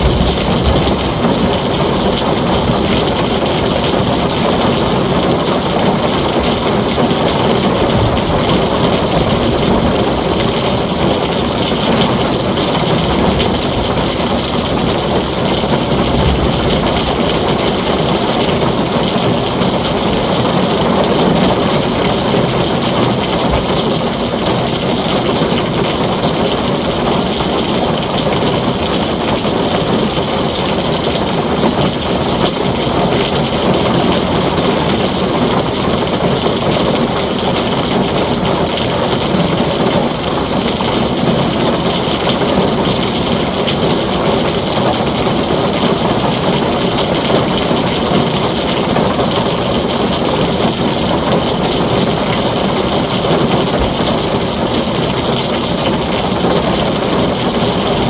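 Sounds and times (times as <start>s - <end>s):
low rumble: 0.0s - 3.6s, 7.3s - 19.2s
heavy rain on a tin roof: 0.0s - 58.0s.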